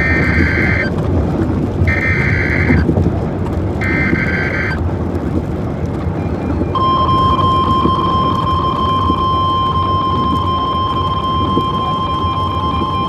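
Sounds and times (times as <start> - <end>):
steady warning alarm tone: 0.0 - 0.9, 1.9 - 2.8, 3.8 - 4.8, 6.8 - 13.0
warbling digital data tones: 0.0 - 0.9, 1.9 - 2.9, 3.8 - 4.8, 6.7 - 13.0
low rumble: 0.0 - 13.0.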